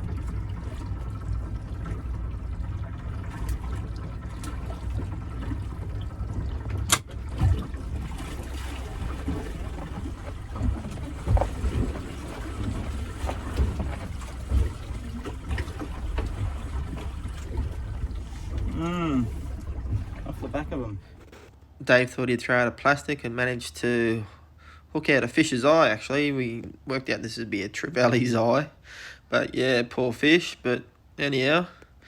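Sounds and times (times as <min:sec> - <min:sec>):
steady low rumble: 0:00.0 - 0:21.5
water lapping against boat hull: 0:00.0 - 0:21.5
sloshing bumps: 0:00.0 - 0:21.6.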